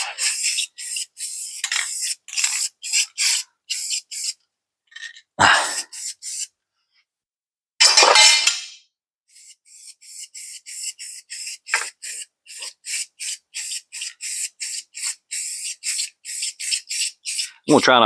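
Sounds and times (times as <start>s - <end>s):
spray can ball rattling: 0.0s - 4.4s, 5.8s - 6.5s, 9.4s - 17.8s
spray can hissing: 0.0s - 4.4s, 5.7s - 6.5s, 9.3s - 18.0s.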